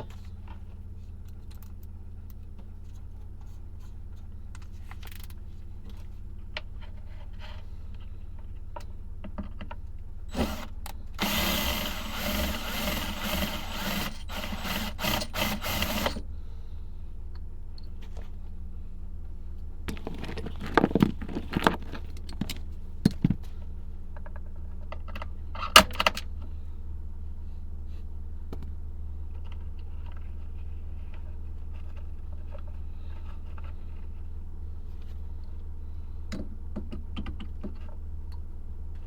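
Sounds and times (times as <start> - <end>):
steady low hum: 9.9 - 25.7
small motorised tool running: 10.3 - 16.2.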